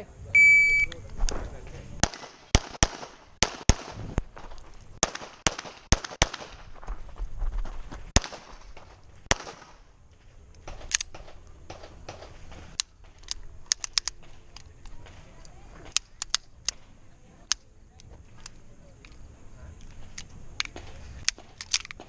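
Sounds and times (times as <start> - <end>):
handgun shots: 2.0 - 4.0, 5.0 - 6.6, 9.3 - 9.8.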